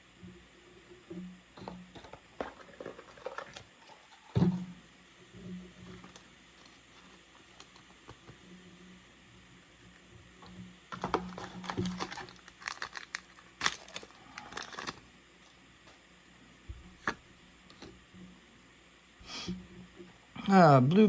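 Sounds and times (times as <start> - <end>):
foil wrapper crinkling and tearing: 10.9 - 15.1.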